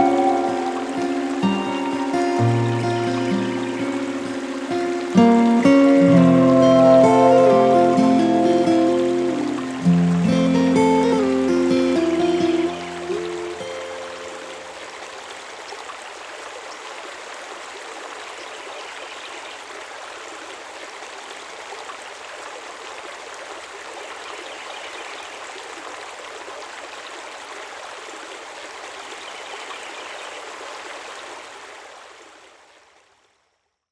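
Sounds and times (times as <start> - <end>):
stream water running: 0.0 - 33.6.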